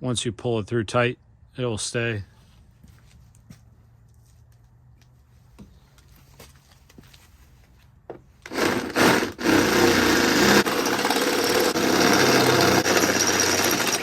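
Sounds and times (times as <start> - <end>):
power drill boring wood: 8.4 - 14.0.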